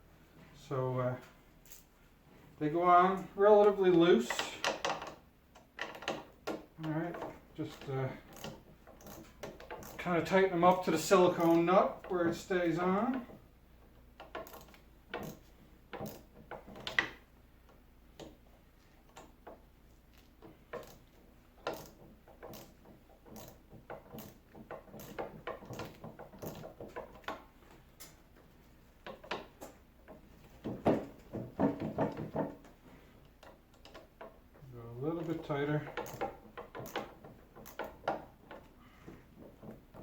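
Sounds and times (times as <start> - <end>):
wrench clicking on nut: 7.2 - 10.1, 10.7 - 12.1, 14.2 - 18.4, 20.7 - 27.4, 33.2 - 34.4, 35.2 - 38.7.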